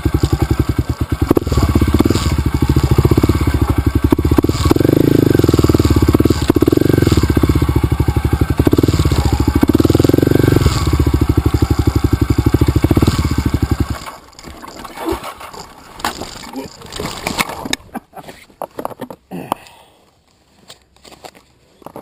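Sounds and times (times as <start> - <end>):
dirt bike engine revving: 0.0 - 14.2.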